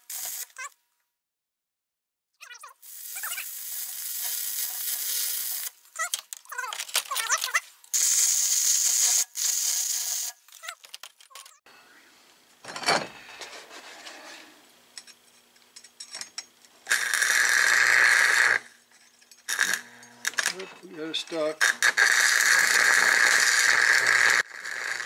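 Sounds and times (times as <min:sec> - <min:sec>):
welding arc crackling and hissing: 0:00.0 - 0:00.6, 0:02.7 - 0:06.1, 0:07.9 - 0:10.5, 0:16.8 - 0:18.8, 0:19.4 - 0:25.0.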